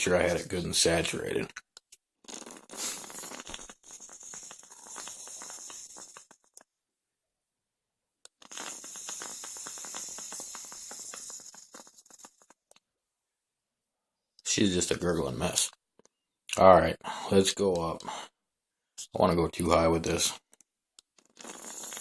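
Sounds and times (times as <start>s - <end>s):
e-liquid gurgling and crackling: 2.2s - 6.6s, 8.3s - 12.7s, 21.2s - 22.0s.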